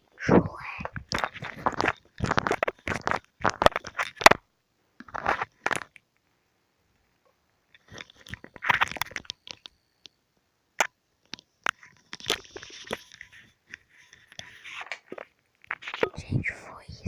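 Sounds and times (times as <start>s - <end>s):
sticky slime crackling and popping: 1.0s - 4.4s.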